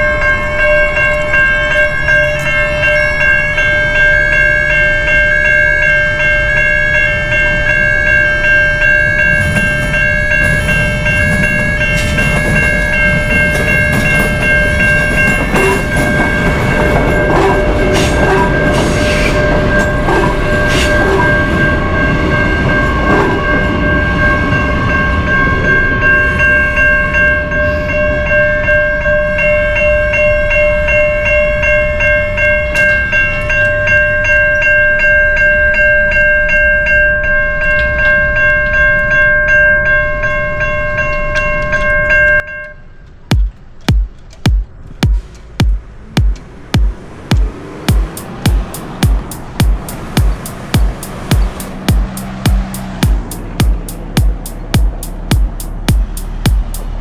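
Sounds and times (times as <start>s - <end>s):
passing train rumble: 0.0s - 57.0s
train wheels clicking and knocking: 9.2s - 24.8s, 42.6s - 57.0s.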